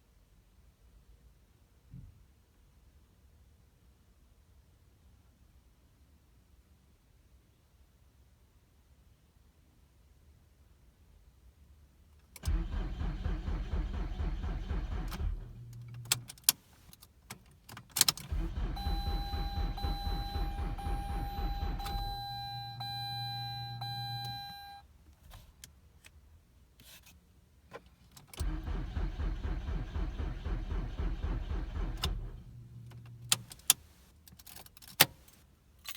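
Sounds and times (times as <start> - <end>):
car engine cranking: 12.4 - 24.8, 28.2 - 35.4
key clicks: 21.1 - 24.8.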